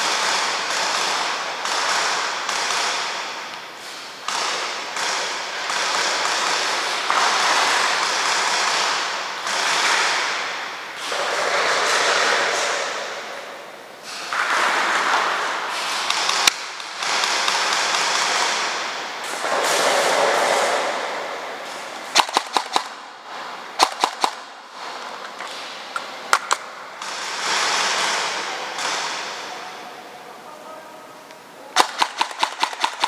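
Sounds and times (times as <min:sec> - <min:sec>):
rifle shots: 0:00.0 - 0:03.5, 0:04.2 - 0:13.2, 0:14.3 - 0:21.3, 0:22.1 - 0:23.0, 0:23.8 - 0:24.9, 0:26.3 - 0:29.5, 0:31.8 - 0:33.0.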